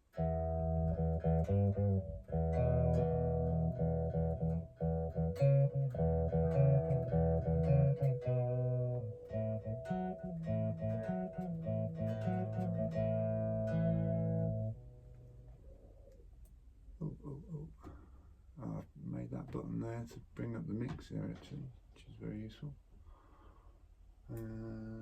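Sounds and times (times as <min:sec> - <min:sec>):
electric guitar strummed chords: 0:00.1 - 0:15.4.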